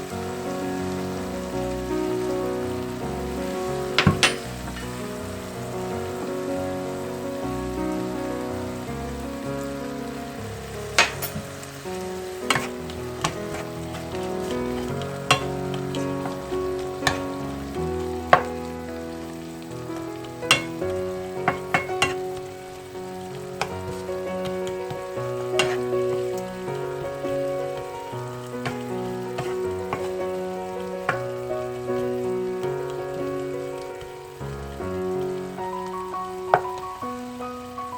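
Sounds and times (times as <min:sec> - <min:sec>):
food sizzling in a frying pan: 0:00.0 - 0:37.9
spatula clinking against pan: 0:21.5 - 0:22.2, 0:25.6 - 0:25.8.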